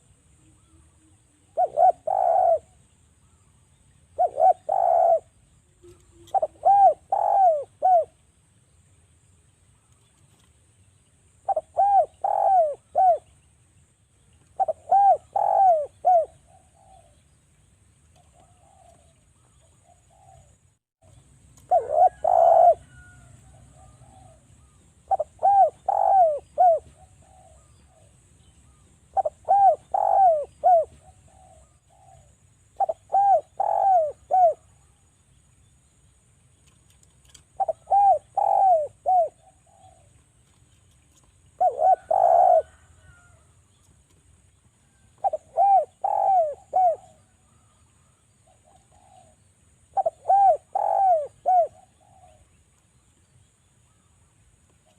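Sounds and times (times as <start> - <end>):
dove cooing: 0.0 - 2.8, 4.1 - 8.2, 11.4 - 13.4, 14.5 - 17.2, 18.1 - 20.6, 21.6 - 34.9, 37.2 - 43.4, 44.8 - 52.6.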